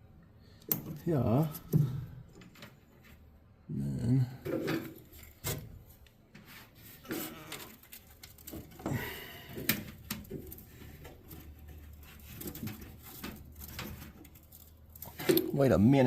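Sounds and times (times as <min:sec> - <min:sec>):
parts clicking and knocking: 0:00.6 - 0:03.2, 0:07.1 - 0:15.7.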